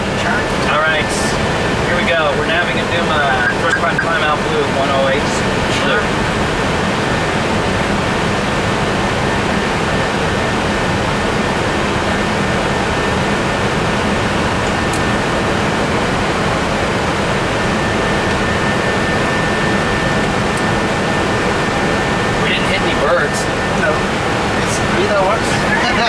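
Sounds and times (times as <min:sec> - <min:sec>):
jet engine noise: 0:00.0 - 0:26.0
faint high whine: 0:00.7 - 0:05.4.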